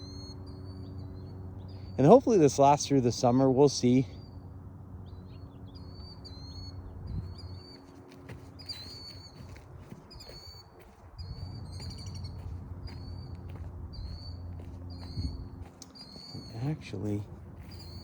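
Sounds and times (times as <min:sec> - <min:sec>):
low background hum: 0:00.0 - 0:18.0
small birds chirping: 0:00.0 - 0:18.0.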